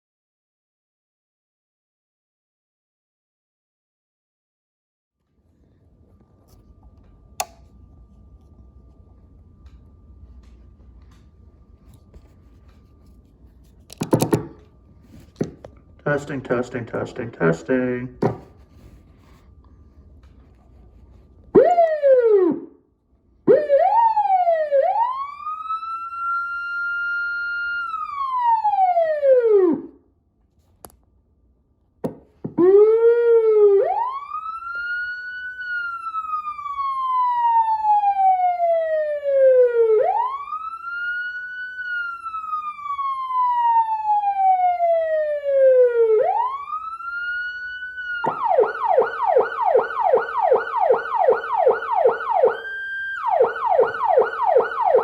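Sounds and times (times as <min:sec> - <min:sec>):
switch clicks: 0:07.4 - 0:07.6
electronic siren wailing and yelping: 0:21.6 - 0:22.7, 0:23.5 - 0:30.0, 0:32.5 - 0:55.0.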